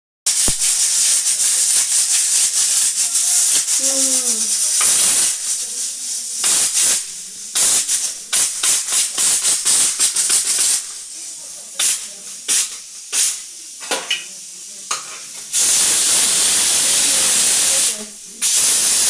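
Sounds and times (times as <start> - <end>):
pressure cooker whistle hissing: 3.4 - 5.4, 15.5 - 19.0.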